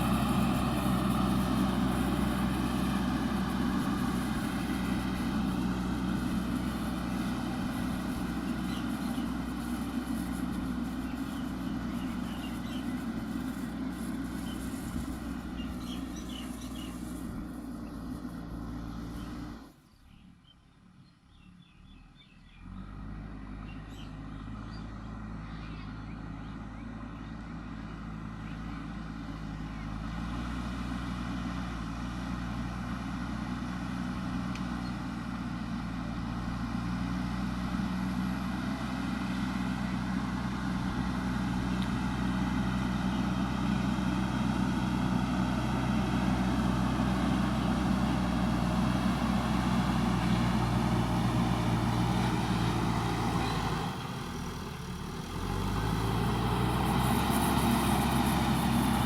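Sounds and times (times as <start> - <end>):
diesel engine running: 0.0 - 20.2, 22.5 - 59.0.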